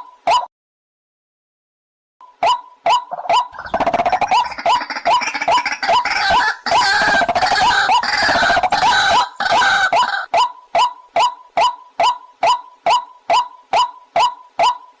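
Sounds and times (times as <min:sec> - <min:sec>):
waterhen calling: 0:02.4 - 0:14.9
harsh croaking chorus: 0:03.1 - 0:10.3.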